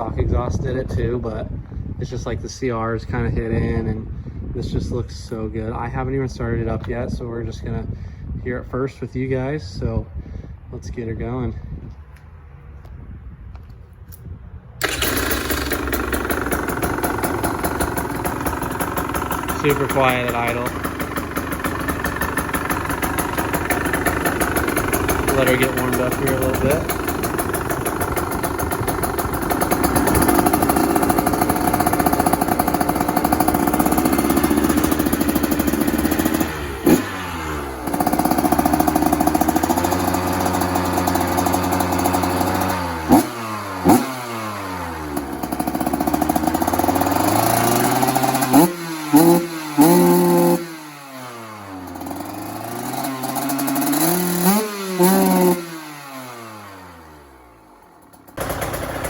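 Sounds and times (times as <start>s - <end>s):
two-stroke engine revving: 14.8s - 59.0s.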